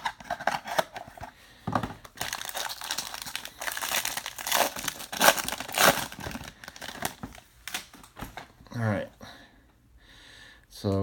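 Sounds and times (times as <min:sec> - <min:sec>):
wrapper tearing and crinkling: 0:02.2 - 0:08.0.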